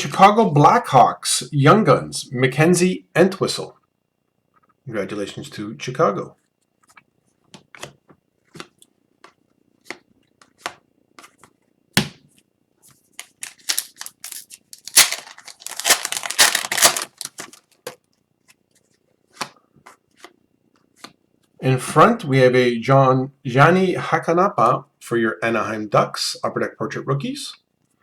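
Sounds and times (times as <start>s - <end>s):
cards clicking and tapping: 13.2s - 17.6s
foil pack tearing and crinkling: 13.2s - 17.8s.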